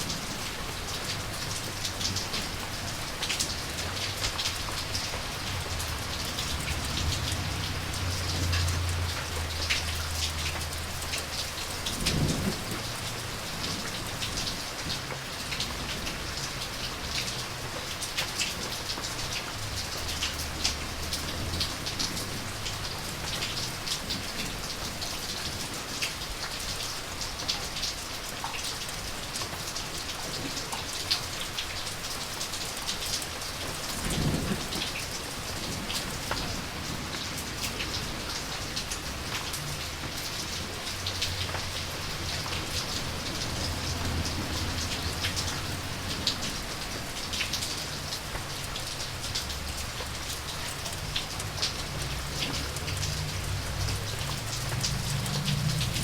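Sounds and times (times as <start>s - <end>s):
steady rain falling: 0.0s - 56.0s
thunder rumbling: 11.7s - 15.0s.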